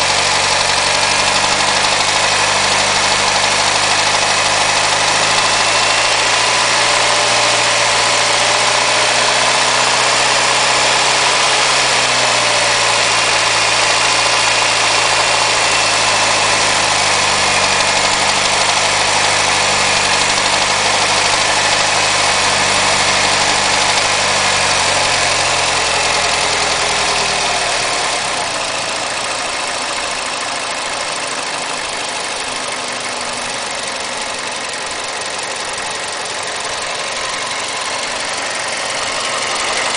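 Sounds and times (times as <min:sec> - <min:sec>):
car engine idling with knocking: 0:00.0 - 0:39.9.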